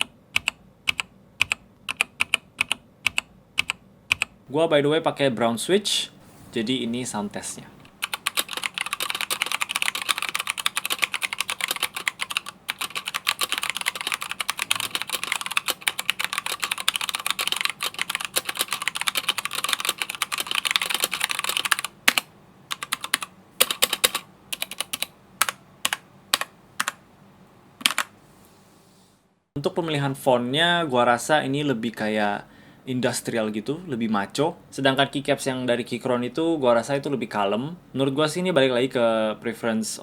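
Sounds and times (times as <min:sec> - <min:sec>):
mechanical keyboard typing: 0:00.0 - 0:04.3, 0:07.9 - 0:27.0, 0:27.8 - 0:28.1.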